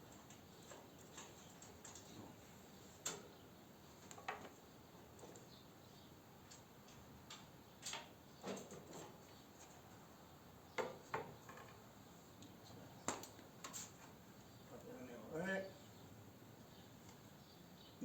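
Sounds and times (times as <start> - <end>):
faint clicks and light knocks: 0.0 - 3.4, 4.0 - 5.6, 6.4 - 9.8, 12.4 - 14.9.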